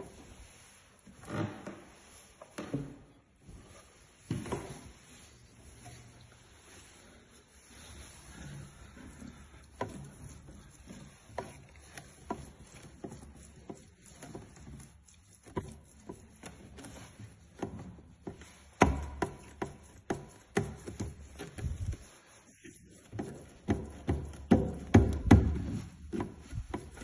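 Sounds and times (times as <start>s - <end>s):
footsteps on creaking wooden stairs: 1.1s - 3.1s.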